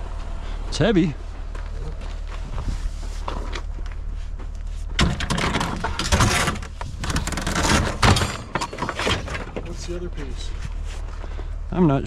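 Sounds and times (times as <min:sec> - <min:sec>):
scrap metal clanking and scraping: 0:05.0 - 0:10.3.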